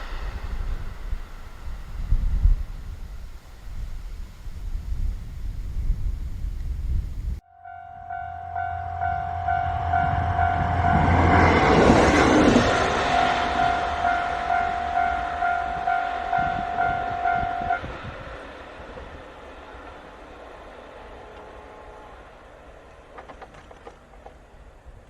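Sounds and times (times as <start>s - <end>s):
diesel railcar passing: 0.0s - 25.0s
level crossing warning bell: 7.4s - 17.8s.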